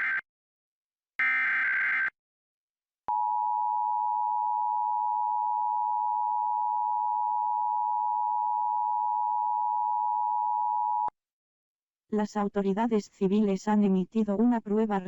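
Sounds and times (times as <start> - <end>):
screech of data tones: 0.0 - 0.2, 1.2 - 2.2.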